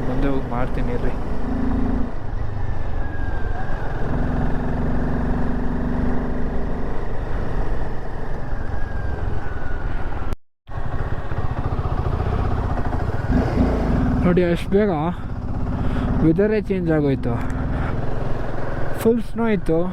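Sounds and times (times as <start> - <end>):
motorcycle engine running: 10.7 - 19.0.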